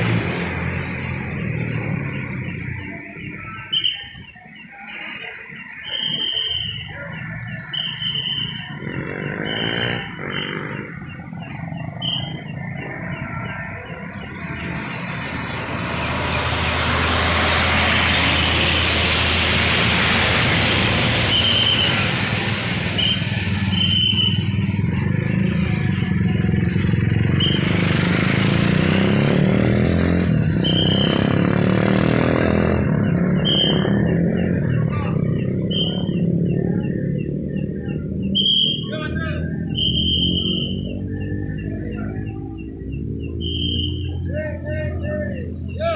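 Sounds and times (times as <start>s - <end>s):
tyres hissing on wet road: 0.0s - 2.8s, 12.9s - 36.1s
vehicle engines passing: 0.0s - 45.9s
traffic whistle blasts: 1.1s - 36.9s, 38.2s - 45.9s.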